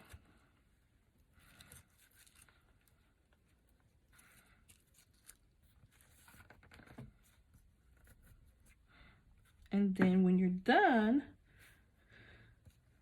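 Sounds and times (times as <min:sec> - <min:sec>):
ribbon rustling: 0:01.2 - 0:08.7.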